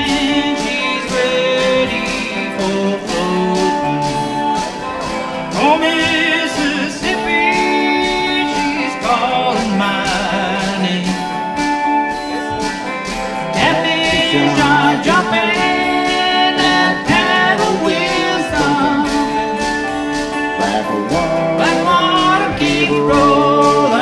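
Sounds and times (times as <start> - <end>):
live country-rock band: 0.0 - 24.0.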